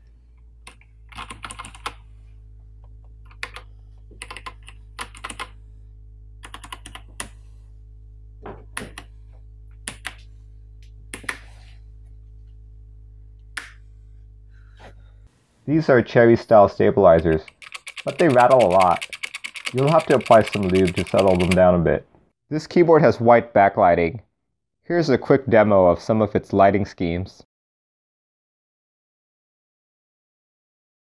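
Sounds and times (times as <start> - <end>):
low hum: 0.0 - 17.5
mechanical keyboard clicks: 17.3 - 21.6.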